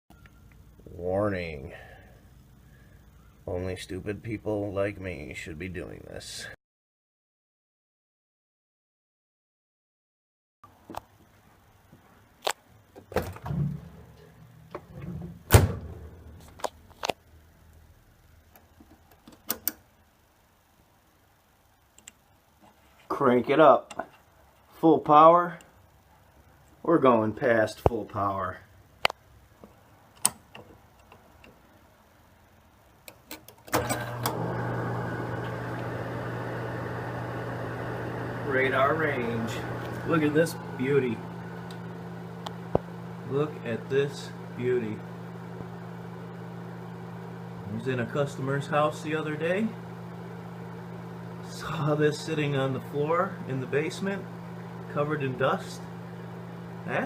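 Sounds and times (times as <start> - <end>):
cooling fan rushing: 33.8 - 57.0
low hum: 34.3 - 56.9
microwave control clicks: 41.4 - 43.2.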